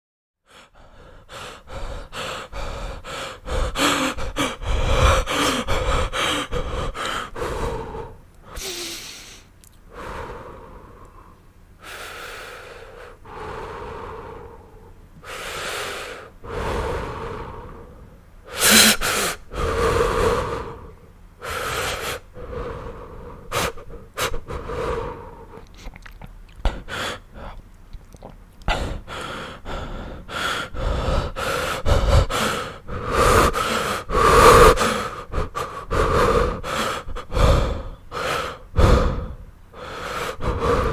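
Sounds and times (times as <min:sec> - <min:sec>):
man breathing heavily with wheezing: 0:00.4 - 0:25.9, 0:26.6 - 0:27.6, 0:28.7 - 0:40.9
man gasping: 0:00.5 - 0:11.2, 0:28.7 - 0:40.9.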